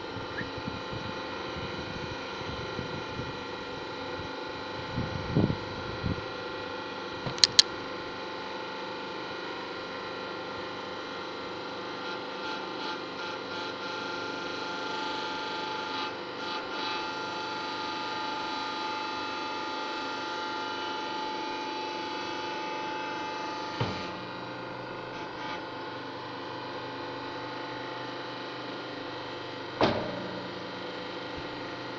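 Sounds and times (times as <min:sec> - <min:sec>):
sharp clicks: 0:07.3 - 0:07.7
steady machine hum: 0:20.3 - 0:31.9.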